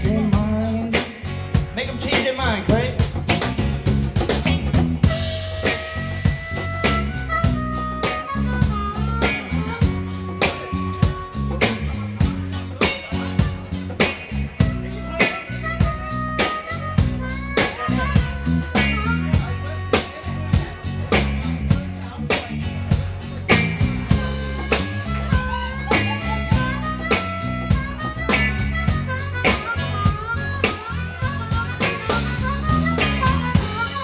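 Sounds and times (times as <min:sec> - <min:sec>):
live blues band playing: 0:00.0 - 0:34.0
harmonica solo: 0:05.1 - 0:14.0, 0:14.6 - 0:22.2, 0:23.2 - 0:34.0.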